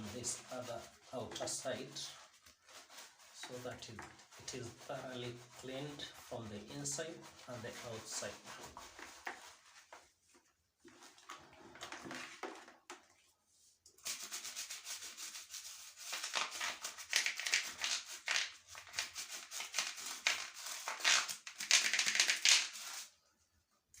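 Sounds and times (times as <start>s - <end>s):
cloth scrubbing shower head: 0.0s - 9.9s.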